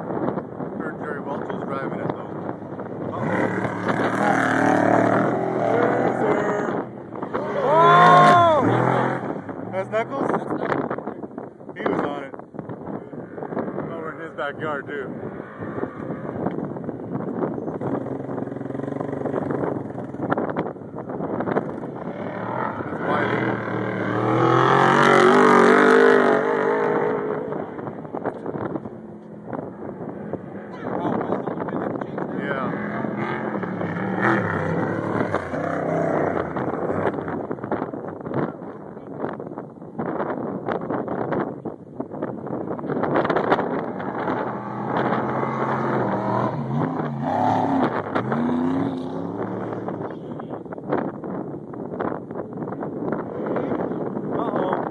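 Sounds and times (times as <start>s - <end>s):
wind buffeting microphone: 0.0s - 54.9s
vehicle engine passing by: 21.2s - 28.7s, 32.2s - 37.4s, 43.4s - 50.1s.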